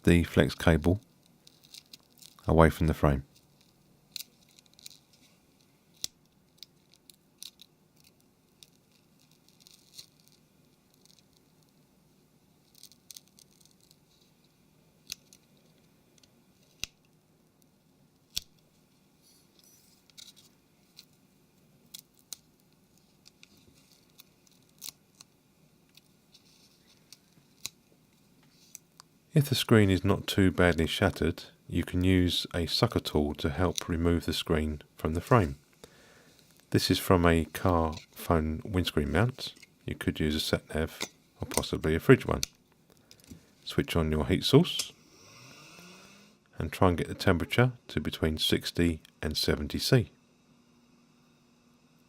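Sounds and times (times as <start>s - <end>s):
small clicks and scrapes of phone parts: 1.2s - 2.4s, 3.3s - 11.8s, 12.6s - 17.1s, 19.2s - 21.2s, 21.9s - 25.3s, 25.9s - 27.8s.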